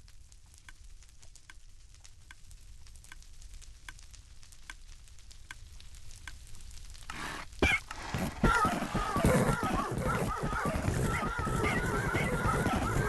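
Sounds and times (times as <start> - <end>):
low hiss: 0.0 - 7.6
horse hooves clopping: 7.1 - 13.0.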